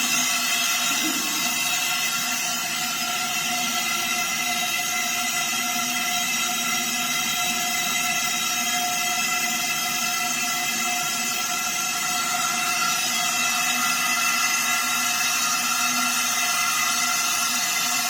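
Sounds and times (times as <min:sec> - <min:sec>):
machine whirring: 0:00.0 - 0:03.0.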